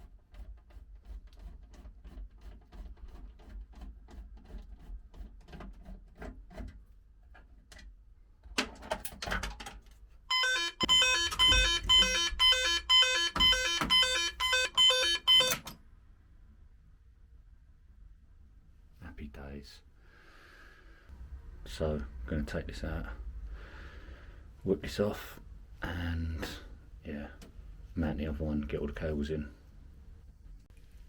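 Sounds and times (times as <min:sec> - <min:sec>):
alarm pulsing electronic beeps: 0:10.3 - 0:15.6.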